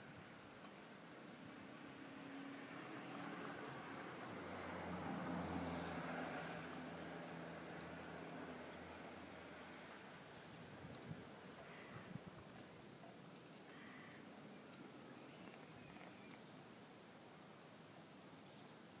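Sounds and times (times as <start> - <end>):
cricket chirping: 1.7 - 2.3, 7.7 - 19.0.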